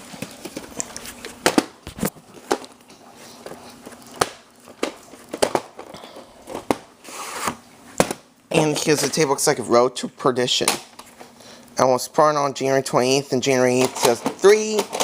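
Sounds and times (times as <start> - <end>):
plastic crinkling: 0.0 - 7.5.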